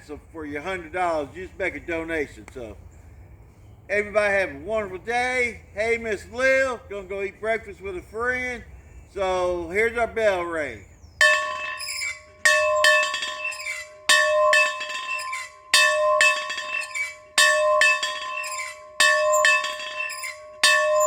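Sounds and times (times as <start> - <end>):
bell ringing: 11.2 - 21.0.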